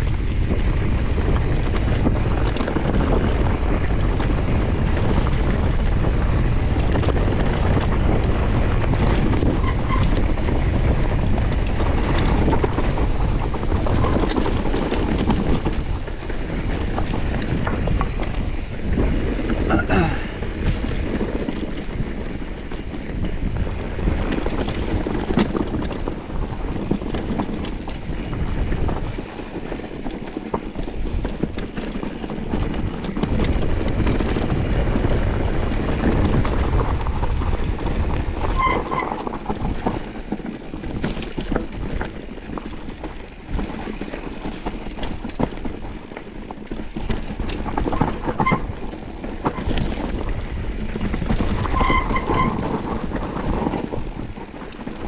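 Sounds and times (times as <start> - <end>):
bike rattling over stones: 0.0 - 55.0
wind buffeting microphone: 0.0 - 55.0
short squeaks: 38.4 - 39.3, 51.6 - 52.7.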